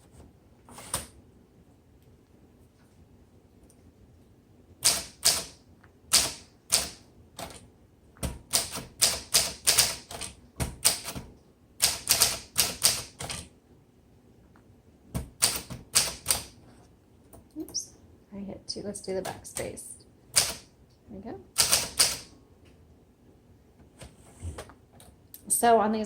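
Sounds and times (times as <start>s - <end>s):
typewriter keys clacking: 4.8s - 7.6s, 8.4s - 13.5s, 15.3s - 16.5s, 20.4s - 20.6s, 21.6s - 22.3s.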